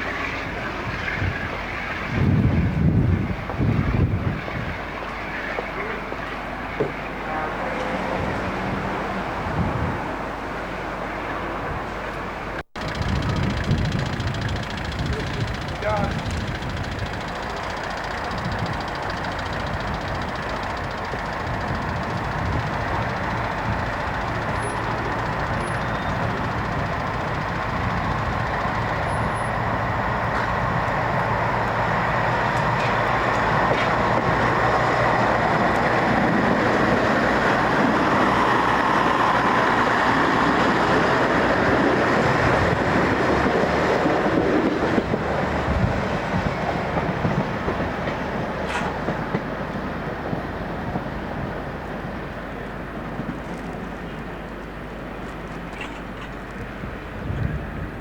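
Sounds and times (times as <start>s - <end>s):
train rumbling past: 0.0s - 58.0s
sharp clicks: 12.8s - 29.1s.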